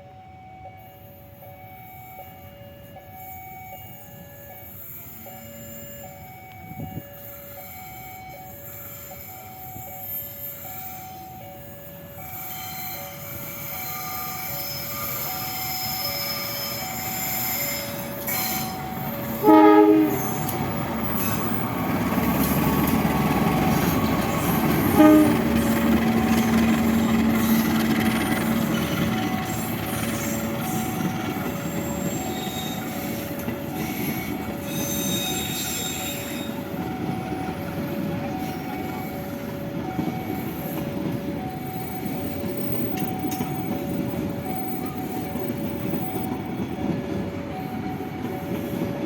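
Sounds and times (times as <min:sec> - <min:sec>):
two-tone warning alarm: 0:00.0 - 0:49.0
train rumble: 0:04.0 - 0:49.0
locomotive horn blast: 0:19.3 - 0:21.0, 0:23.6 - 0:28.0.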